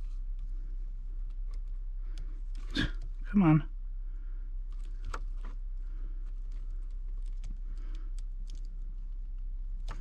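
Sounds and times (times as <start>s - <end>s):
hands fiddling with wires: 0.0s - 3.2s, 4.6s - 10.0s
steady low hum: 0.0s - 10.0s.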